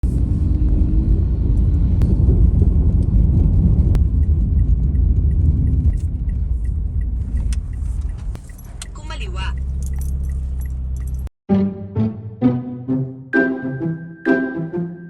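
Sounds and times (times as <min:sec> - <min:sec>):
vehicle rumble: 0:00.0 - 0:11.3.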